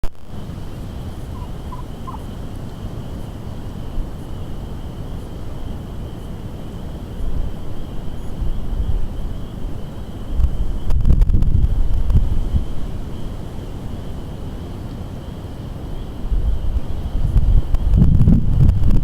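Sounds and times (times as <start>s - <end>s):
wind buffeting the microphone: 0.2s - 19.0s
turkey gobbling: 1.0s - 2.6s.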